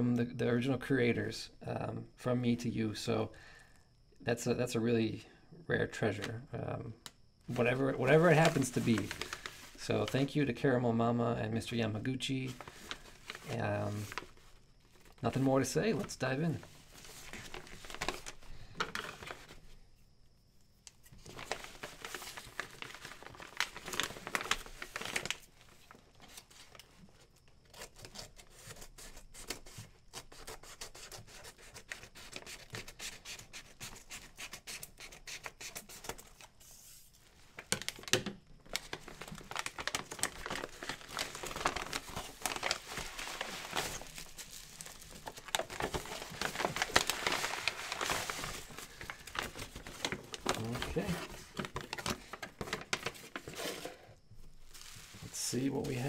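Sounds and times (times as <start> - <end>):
wrapping crinkling and rustling: 7.5 - 10.4, 12.3 - 19.8, 20.9 - 30.6, 35.5 - 56.0
packaging tearing: 21.2 - 25.5, 37.6 - 53.9.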